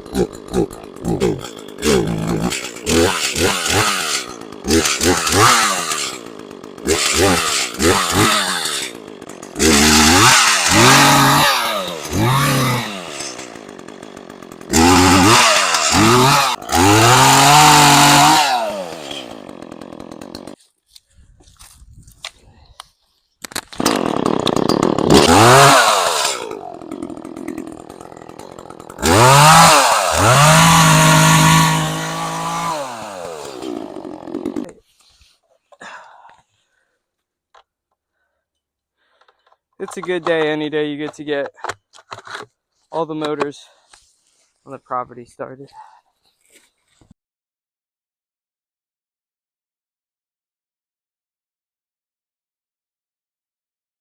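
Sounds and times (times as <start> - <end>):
two-stroke chainsaw revving: 0.0 - 20.6, 23.7 - 34.8.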